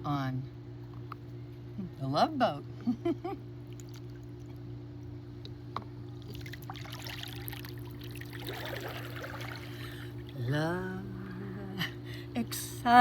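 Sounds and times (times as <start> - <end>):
steady low hum: 0.0 - 13.0
water splashing in pool: 6.2 - 10.5.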